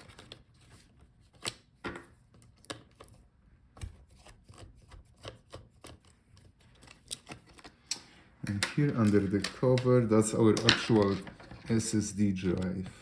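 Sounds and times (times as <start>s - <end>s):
light scraping and handling: 4.1s - 13.0s.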